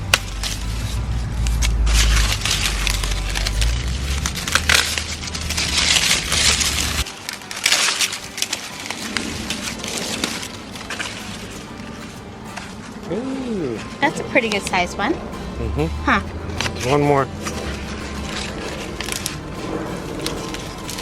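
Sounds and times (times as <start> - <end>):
low rumble: 0.0 - 7.0, 14.2 - 21.0
corn stalks rustling and snapping: 0.0 - 13.2, 16.6 - 21.0.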